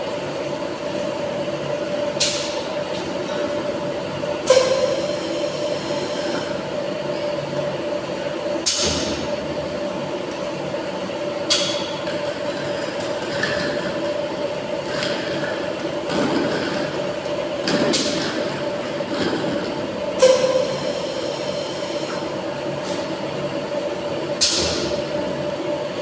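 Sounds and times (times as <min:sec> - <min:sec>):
washing machine humming: 0:00.0 - 0:26.0.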